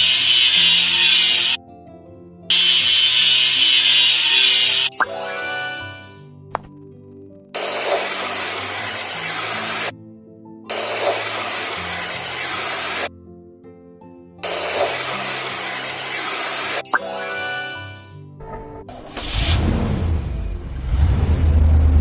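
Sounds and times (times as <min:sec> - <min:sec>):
bursts of hissing: 0:00.0 - 0:01.6, 0:02.5 - 0:04.9, 0:07.6 - 0:09.9, 0:10.7 - 0:13.1, 0:14.4 - 0:16.8
soft background music: 0:01.6 - 0:02.5, 0:04.9 - 0:21.0.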